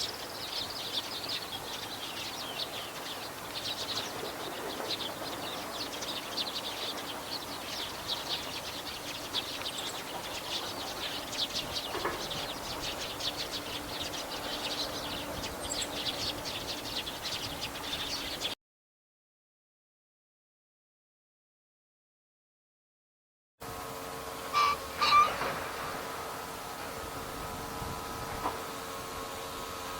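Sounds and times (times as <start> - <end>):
songbirds chirping and trilling: 0.0 - 18.6, 24.4 - 28.8.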